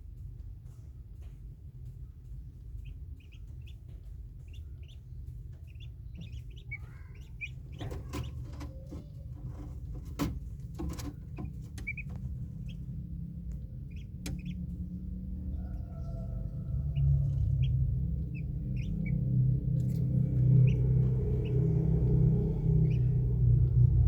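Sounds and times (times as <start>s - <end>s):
steady low hum: 0.0s - 24.0s
ducklings peeping: 0.2s - 24.0s
knocks and clicks: 7.6s - 12.7s, 13.5s - 14.8s.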